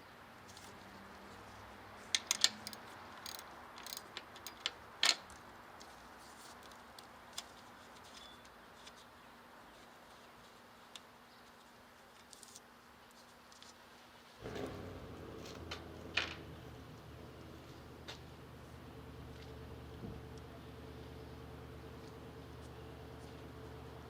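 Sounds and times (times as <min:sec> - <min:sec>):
metallic clicks of hand tools: 0:02.1 - 0:05.2.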